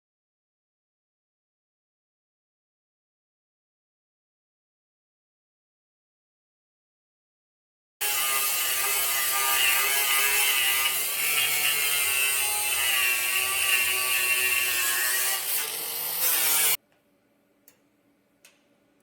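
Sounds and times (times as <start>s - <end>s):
welding arc buzzing with hiss: 8.0s - 16.8s.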